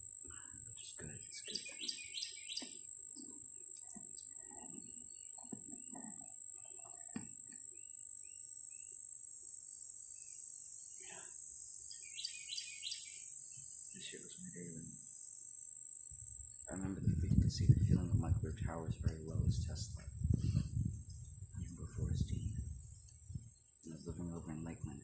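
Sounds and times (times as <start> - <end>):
birds chirping: 0.0 - 8.9, 11.1 - 15.0, 16.7 - 25.0
faint low mumbling: 0.3 - 2.1, 14.0 - 15.0, 16.7 - 25.0.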